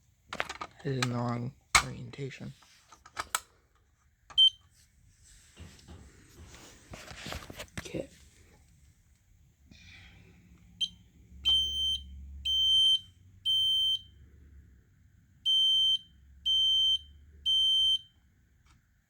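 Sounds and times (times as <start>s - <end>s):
smoke alarm chirp: 10.8s - 14.2s, 15.5s - 18.2s
smoke alarm high-pitched beeps: 10.8s - 14.2s, 15.4s - 18.2s.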